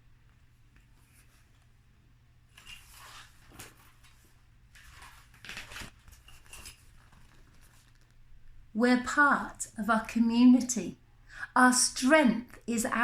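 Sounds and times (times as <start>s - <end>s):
book pages turning: 2.5s - 8.3s.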